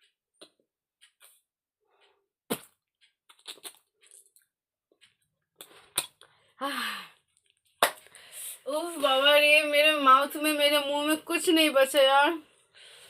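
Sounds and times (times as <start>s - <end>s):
woman's tongue clicks and lip smacks: 2.5s - 6.3s
breathy sigh: 6.6s - 7.2s.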